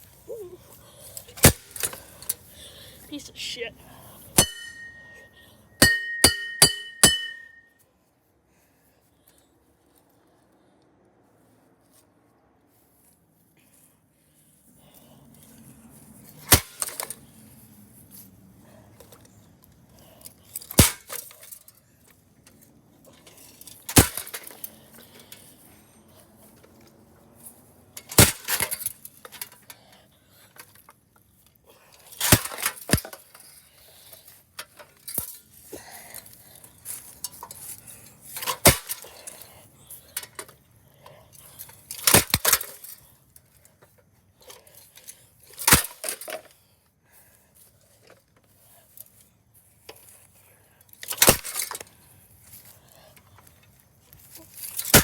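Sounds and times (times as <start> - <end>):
metal fan parts clanking: 4.3 - 7.7, 27.4 - 29.8.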